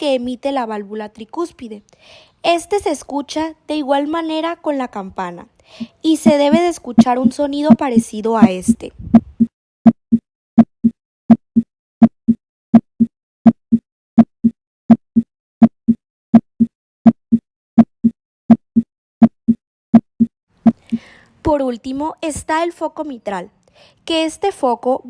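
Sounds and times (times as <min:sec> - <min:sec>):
heartbeat through stethoscope: 0:06.2 - 0:09.5, 0:20.6 - 0:21.0.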